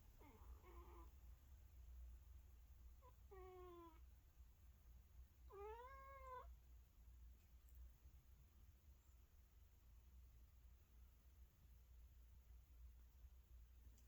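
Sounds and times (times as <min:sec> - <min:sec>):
cat mewing softly: 0:00.2 - 0:01.1, 0:03.0 - 0:04.0, 0:05.5 - 0:06.5.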